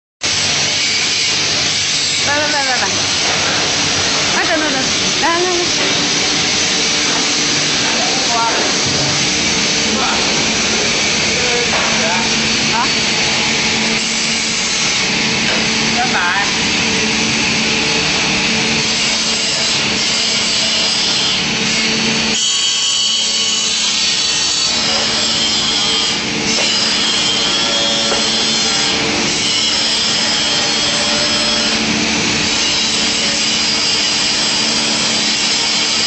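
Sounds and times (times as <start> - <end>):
motor hum: 0.3 - 22.4.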